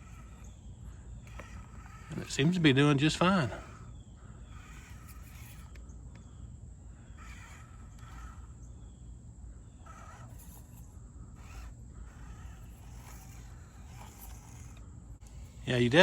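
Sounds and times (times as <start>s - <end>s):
brief rasping sounds: 0.0s - 6.3s, 9.8s - 16.0s
small electric motor whirring: 0.0s - 16.0s.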